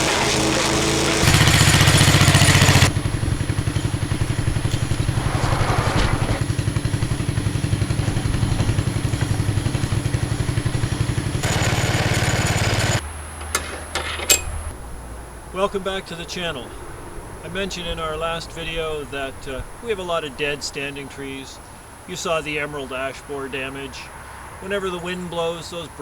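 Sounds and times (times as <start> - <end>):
rough chipping noise: 0.0 - 13.0
wood chipper engine pulsing: 0.0 - 20.0.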